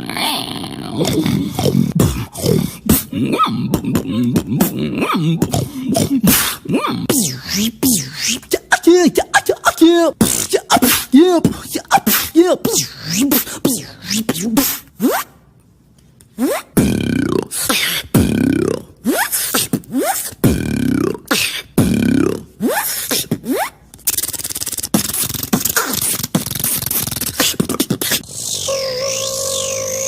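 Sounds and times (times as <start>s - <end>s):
beatboxing vocal bass drops: 0.0s - 15.4s, 16.3s - 30.0s
rapid buzzing crackling vocal run: 1.0s - 14.6s
beatboxing clicks: 1.0s - 28.6s.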